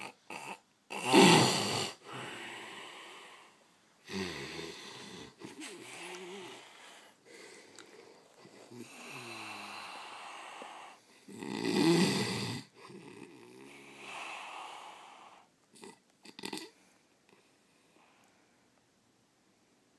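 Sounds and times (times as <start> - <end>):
animal snoring: 0.0 - 6.7, 8.7 - 16.8.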